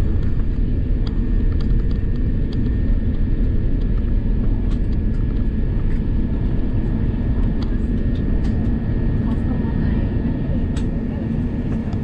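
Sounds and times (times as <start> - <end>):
jet engine cabin rumble: 0.0 - 12.0.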